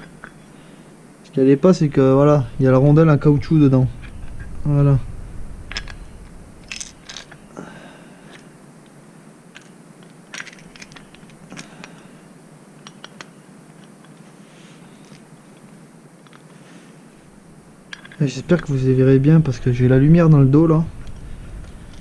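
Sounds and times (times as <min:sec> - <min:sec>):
small metal parts clinking: 0:05.7 - 0:07.5, 0:09.5 - 0:12.0, 0:15.0 - 0:15.3, 0:17.9 - 0:18.3.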